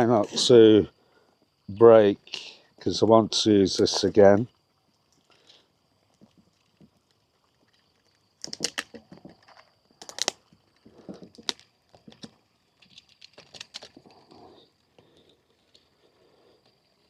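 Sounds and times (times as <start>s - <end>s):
wooden box cracking open: 8.4s - 14.0s.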